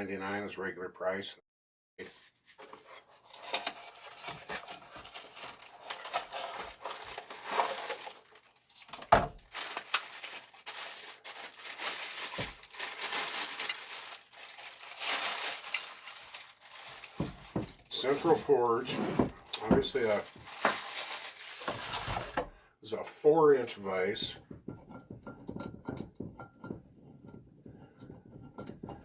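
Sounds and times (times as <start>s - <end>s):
packaging crinkling: 3.7s - 18.3s, 19.4s - 22.5s.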